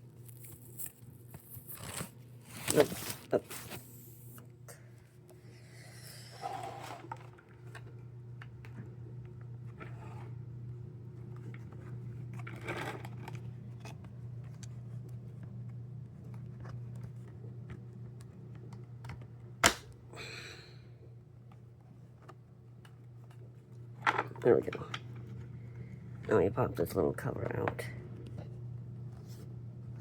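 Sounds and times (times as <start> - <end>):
steady low hum: 0.0 - 30.0
plastic latch snapping: 19.6 - 20.0.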